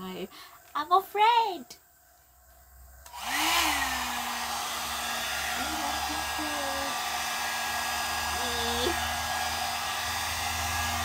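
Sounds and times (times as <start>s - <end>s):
hair dryer blowing and humming: 3.0s - 11.0s.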